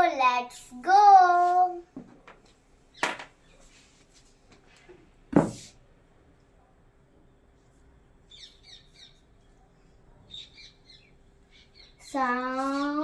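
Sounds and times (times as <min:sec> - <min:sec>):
faint steady hum: 0:00.0 - 0:13.0
high bird chirps: 0:08.3 - 0:09.2, 0:10.3 - 0:13.0.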